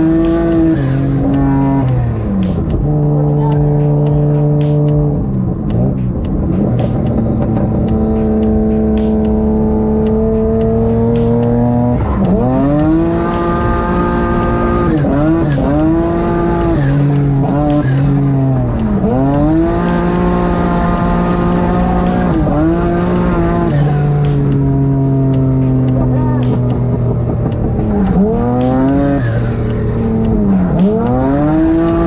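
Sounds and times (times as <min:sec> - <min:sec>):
car engine revving hard: 0:00.0 - 0:32.0.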